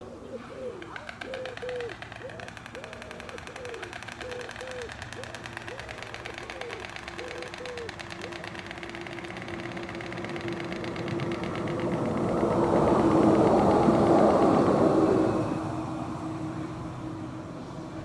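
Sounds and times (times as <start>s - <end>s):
steady low hum: 0.0s - 18.0s
stork clattering its bill: 0.7s - 12.5s
hollow rising and falling notes: 9.3s - 17.4s.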